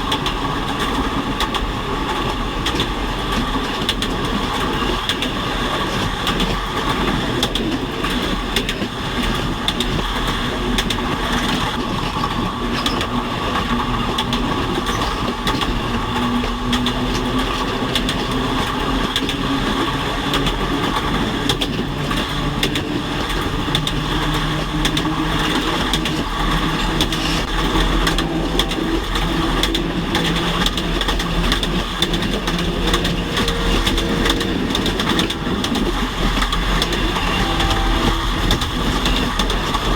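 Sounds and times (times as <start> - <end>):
train rolling on track: 0.0 - 39.9
low hum rising in pitch: 32.3 - 39.0.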